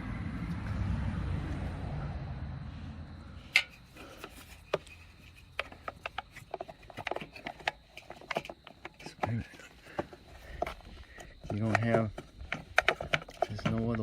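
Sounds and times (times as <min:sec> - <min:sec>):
low rumble: 0:00.0 - 0:03.6
plastic parts clicking and knocking: 0:03.5 - 0:14.0.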